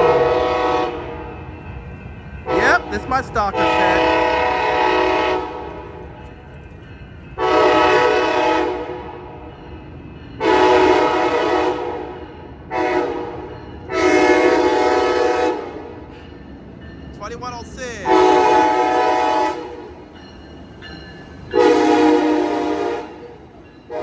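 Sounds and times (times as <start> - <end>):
train air horn blasts: 0.0 - 1.2, 2.5 - 5.9, 7.4 - 9.2, 10.4 - 15.9, 18.0 - 20.0, 21.5 - 24.0
passing train rumble: 0.0 - 24.0.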